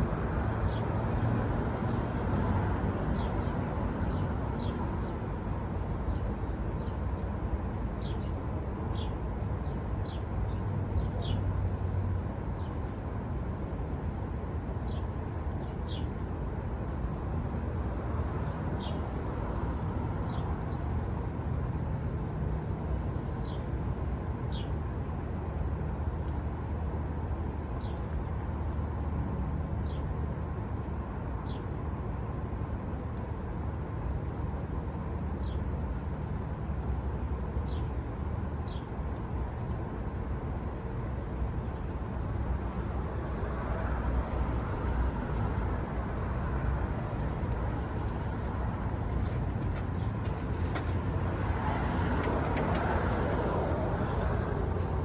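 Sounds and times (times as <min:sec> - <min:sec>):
small birds chirping: 0:37.6 - 0:39.0, 0:48.0 - 0:50.8
steady low rumble: 0:44.2 - 0:55.0.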